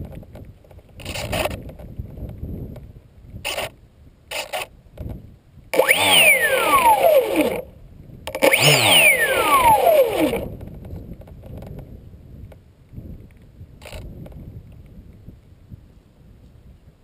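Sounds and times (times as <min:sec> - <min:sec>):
electric motor propeller whine: 0:05.8 - 0:07.7, 0:08.3 - 0:10.6.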